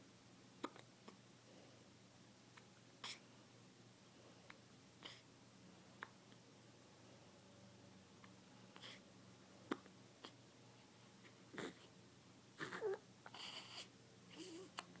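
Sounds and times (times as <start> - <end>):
baby hiccuping: 0.6 - 0.9
baby grunts and squeaks: 12.6 - 14.7.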